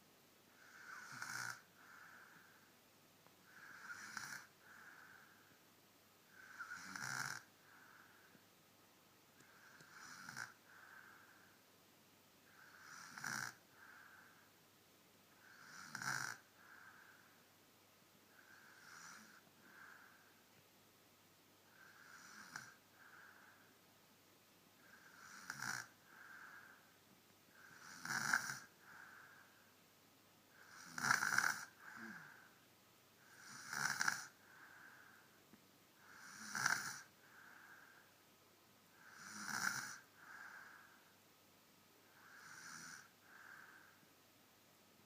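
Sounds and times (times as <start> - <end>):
child snoring: 0.6 - 2.6, 3.4 - 5.4, 6.3 - 8.2, 9.4 - 11.4, 12.4 - 14.4, 15.4 - 17.2, 18.3 - 20.3, 21.7 - 23.6, 24.8 - 26.8, 27.5 - 29.5, 30.5 - 32.5, 33.2 - 35.2, 36.0 - 38.0, 38.9 - 41.0, 42.1 - 44.0.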